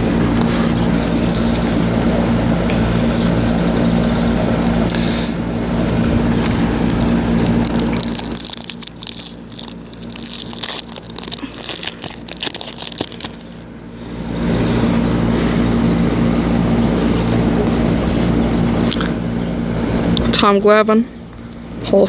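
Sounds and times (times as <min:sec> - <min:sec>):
steady mechanical hum: 0:00.0 - 0:22.0
cards being handled: 0:05.8 - 0:13.7.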